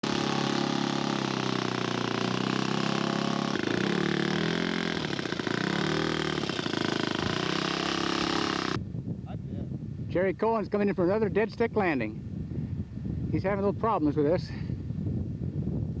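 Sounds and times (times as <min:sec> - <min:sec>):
model airplane engine running: 0:00.0 - 0:08.8.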